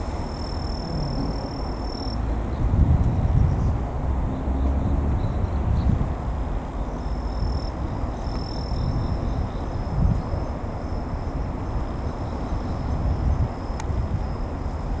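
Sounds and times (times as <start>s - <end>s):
uneven low rumble: 0.0s - 3.8s
crickets trilling: 0.0s - 15.0s.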